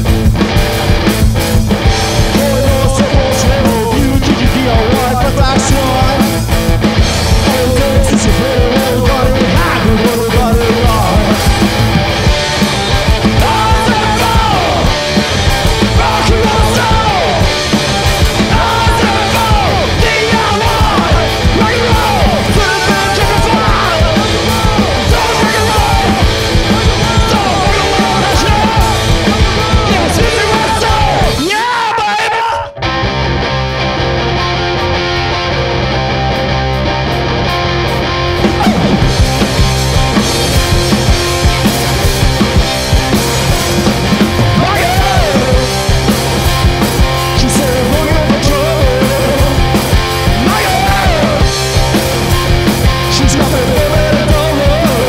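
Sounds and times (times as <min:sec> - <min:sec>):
live punk blues rock: 0:00.0 - 0:55.0
sliding electric guitar lead: 0:00.0 - 0:55.0.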